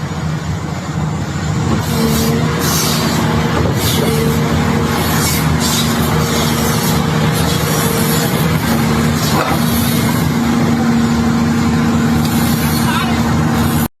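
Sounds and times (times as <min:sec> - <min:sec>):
excavator diesel engine running: 0:00.0 - 0:13.9.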